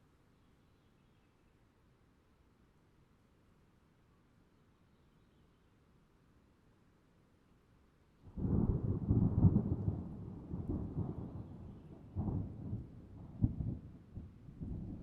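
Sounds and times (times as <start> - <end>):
thunder rumbling: 8.4 - 15.0.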